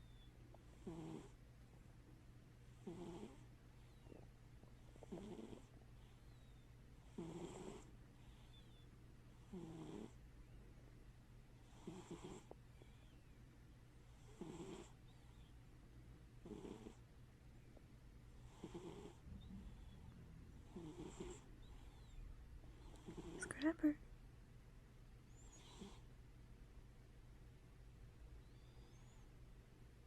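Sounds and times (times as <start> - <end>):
cat snoring faintly: 0.0 - 1.4, 2.7 - 10.2, 11.6 - 13.2, 14.0 - 15.6, 16.4 - 17.1, 18.3 - 23.8, 25.3 - 26.1.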